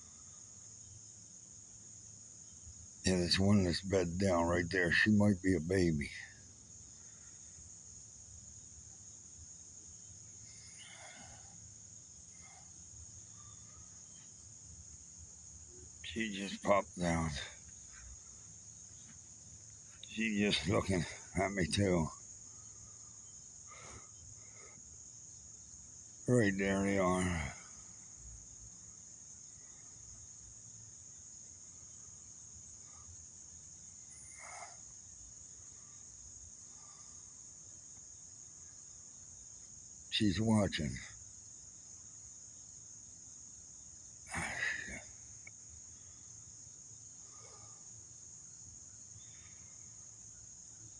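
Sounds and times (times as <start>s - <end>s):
insect chorus drone: 0.0s - 50.9s.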